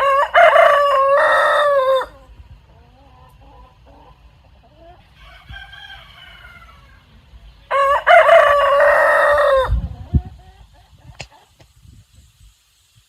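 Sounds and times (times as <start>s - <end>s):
rooster crowing: 0.0s - 2.2s, 5.1s - 7.1s, 7.7s - 9.8s.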